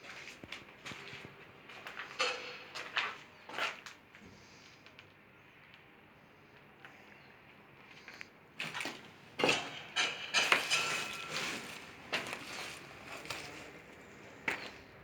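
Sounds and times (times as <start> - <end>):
hard objects knocking and clanking: 9.4 - 13.8.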